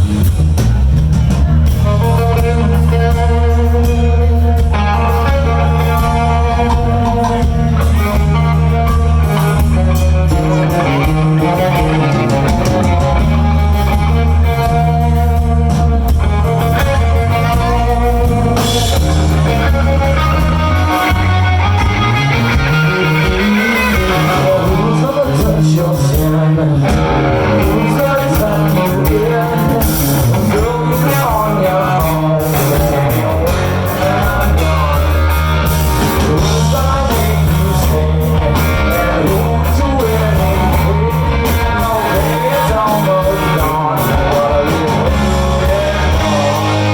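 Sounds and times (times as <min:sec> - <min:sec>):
electric guitar: 0:00.0 - 0:46.9
rock band playing live: 0:00.0 - 0:46.9.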